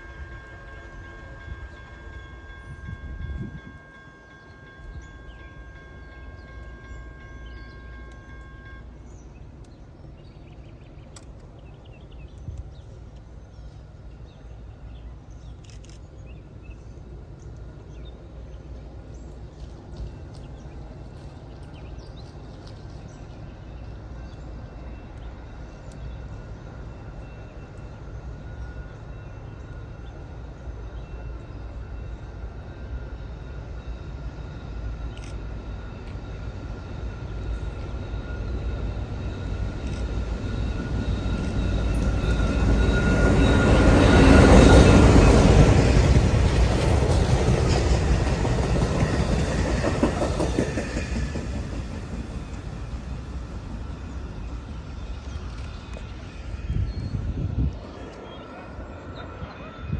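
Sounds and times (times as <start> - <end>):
train rumbling: 0.0 - 59.9
high ringing tone: 31.1 - 46.1.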